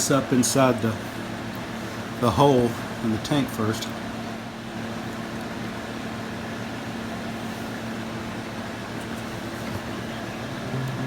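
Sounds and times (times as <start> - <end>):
mechanical hum: 0.0 - 11.0.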